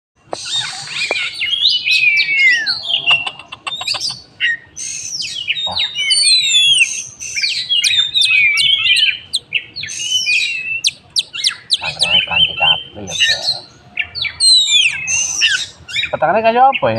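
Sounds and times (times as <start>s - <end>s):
bird singing whistles and clicks: 0.3s - 4.2s, 14.4s - 16.1s.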